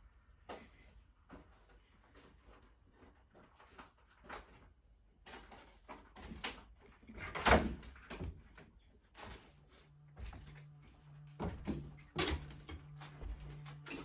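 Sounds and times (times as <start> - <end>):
low steady hum: 8.5 - 14.0
knocks and scuffs: 10.0 - 14.0.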